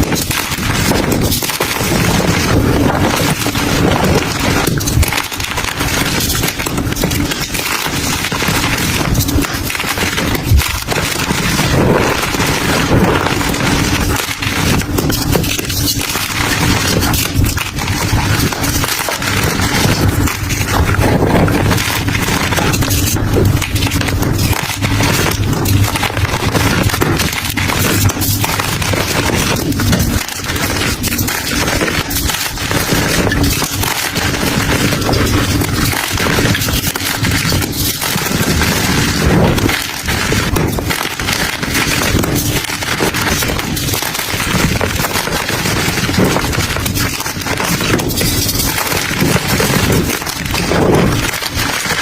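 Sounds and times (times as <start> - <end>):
brittle material crunching: 0.0 - 52.0.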